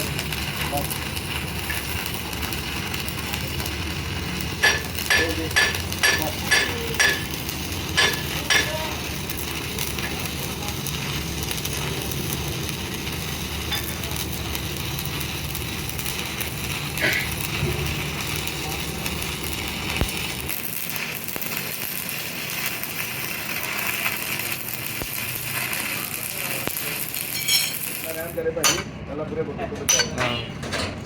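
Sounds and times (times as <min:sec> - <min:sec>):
crackling hiss: 0:00.0 - 0:28.4
hammer striking steel: 0:04.6 - 0:08.8, 0:28.6 - 0:28.9, 0:29.9 - 0:30.4.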